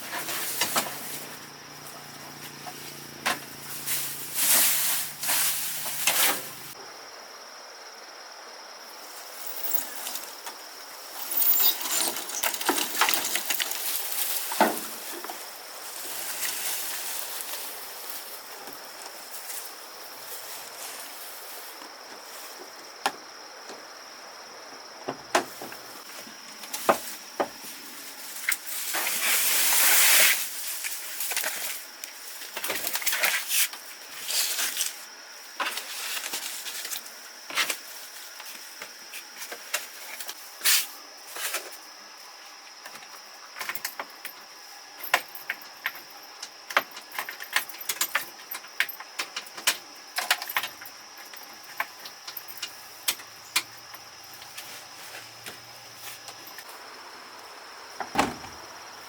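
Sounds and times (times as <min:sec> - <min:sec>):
metal tools clinking and knocking: 0:11.2 - 0:14.2.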